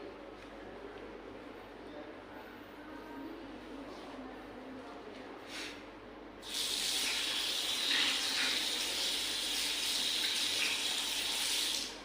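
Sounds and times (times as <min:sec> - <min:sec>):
tap water running into sink: 0:06.4 - 0:12.0.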